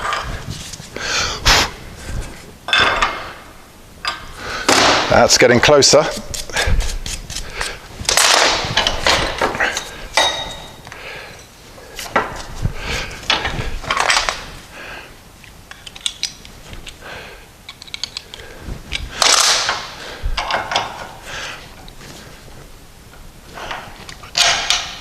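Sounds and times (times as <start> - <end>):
hand reamer scraping metal: 5.8 - 10.0.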